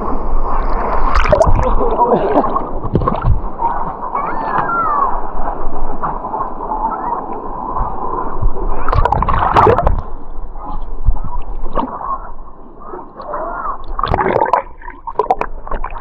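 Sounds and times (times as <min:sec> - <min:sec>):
muffled waterfall rushing: 0:00.0 - 0:16.0
water splashing: 0:00.0 - 0:16.0.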